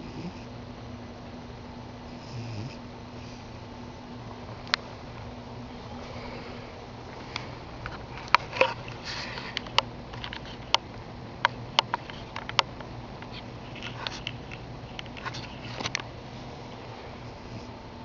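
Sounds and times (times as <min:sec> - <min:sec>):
cat snoring: 0:00.0 - 0:00.5, 0:02.1 - 0:03.6, 0:17.2 - 0:17.8
steady low hum: 0:00.0 - 0:18.0.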